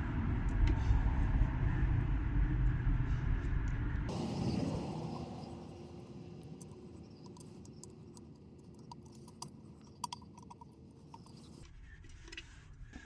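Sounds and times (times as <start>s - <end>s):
low rumble: 0.0s - 7.1s.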